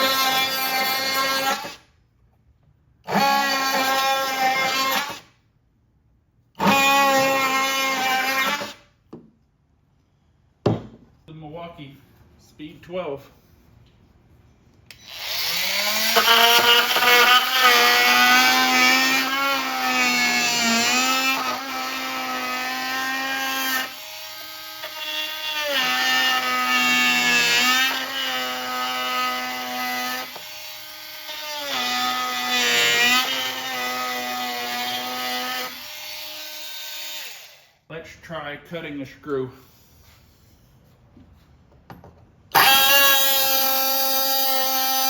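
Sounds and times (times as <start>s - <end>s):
oscillating tool cutting wood: 14.9s - 37.7s, 42.5s - 45.0s.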